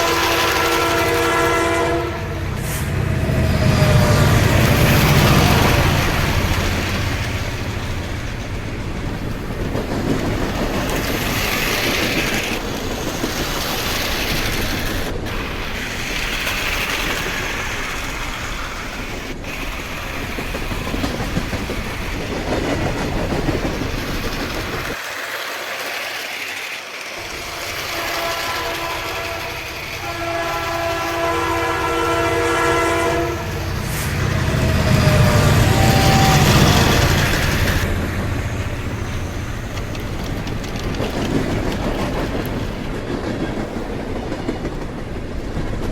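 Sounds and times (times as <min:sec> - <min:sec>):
train horn chord: 0:00.0 - 0:04.4, 0:27.8 - 0:36.6
train rumbling on rails: 0:00.0 - 0:45.9.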